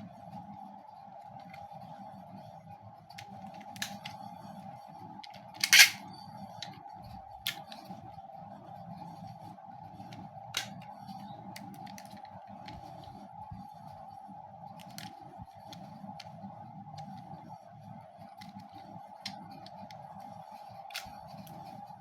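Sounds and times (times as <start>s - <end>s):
plastic clicks and snaps: 3.1s - 4.2s, 5.2s - 6.0s, 7.5s - 7.9s, 10.1s - 10.9s, 14.8s - 16.4s, 20.9s - 21.6s.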